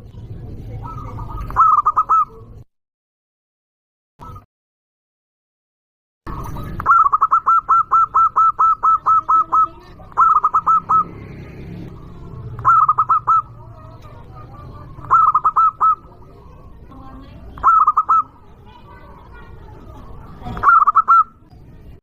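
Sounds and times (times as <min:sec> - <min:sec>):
dove cooing: 0:00.6 - 0:02.6, 0:06.3 - 0:21.5.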